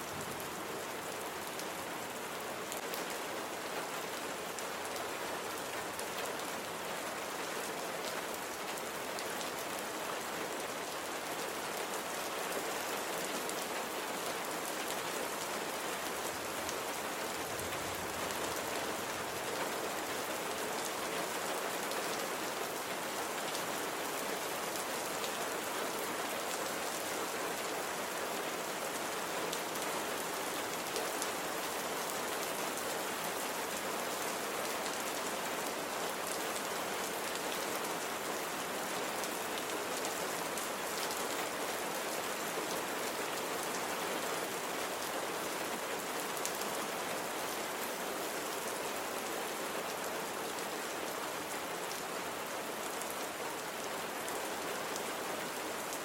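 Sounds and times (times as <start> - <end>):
rain falling: 0.0 - 56.0.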